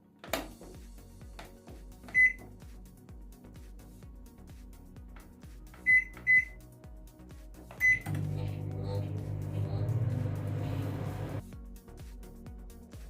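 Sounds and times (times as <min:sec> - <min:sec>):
background music: 0:00.0 - 0:13.0
microwave beeps: 0:02.1 - 0:02.5, 0:05.8 - 0:06.6, 0:07.8 - 0:11.4.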